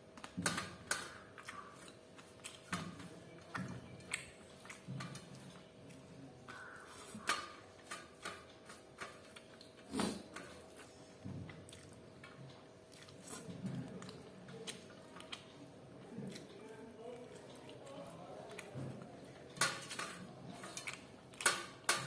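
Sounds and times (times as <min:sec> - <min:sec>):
soft chewing: 0:00.0 - 0:22.0
mouth and food clicks: 0:00.2 - 0:09.8.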